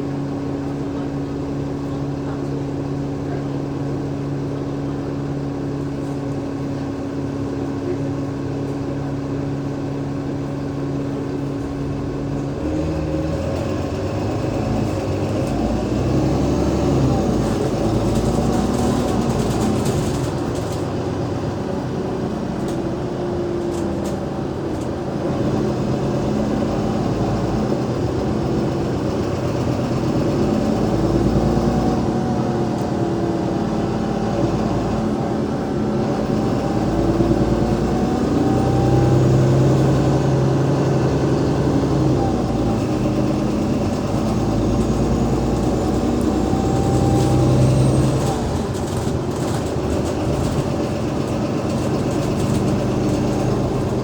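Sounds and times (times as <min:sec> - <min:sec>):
bus diesel engine: 0:00.0 - 0:54.0.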